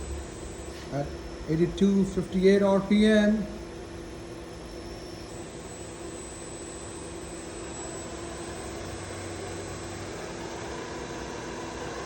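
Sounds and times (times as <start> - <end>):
milling machine motor hum: 0.0 - 12.0.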